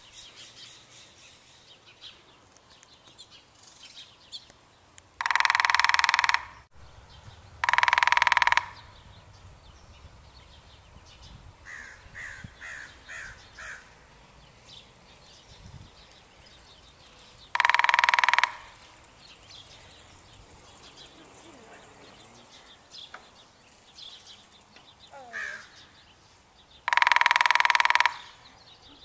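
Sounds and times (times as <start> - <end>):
woodpecker drumming: 4.4 - 6.8, 7.5 - 9.2, 11.7 - 25.8, 26.7 - 28.6
faint bird calls: 5.2 - 9.4, 10.4 - 14.1, 16.1 - 29.0.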